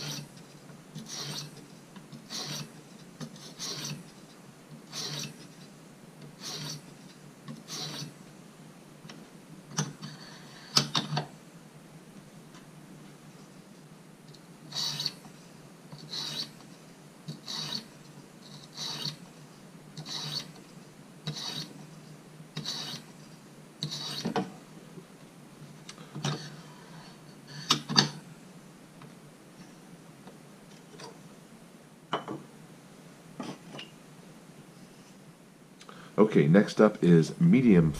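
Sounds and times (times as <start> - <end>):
sharpening stone rasping on knife: 0.0 - 0.3, 1.0 - 1.6, 2.3 - 2.7, 3.4 - 4.0, 4.9 - 5.5, 6.4 - 6.9, 7.6 - 8.1, 14.7 - 15.2, 16.0 - 16.6, 17.3 - 17.9, 18.5 - 19.2, 20.0 - 20.6, 21.3 - 21.8, 22.6 - 23.1, 23.8 - 24.3
sharp scrapes or knocks: 23.8 - 24.5.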